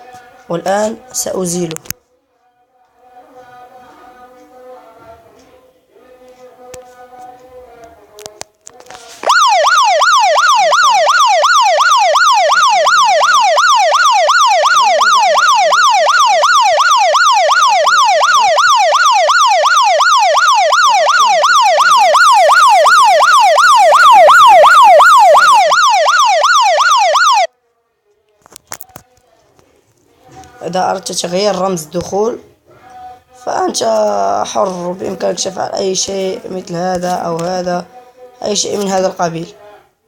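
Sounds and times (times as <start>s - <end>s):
electronic siren alarm wailing: 9.2s - 27.5s.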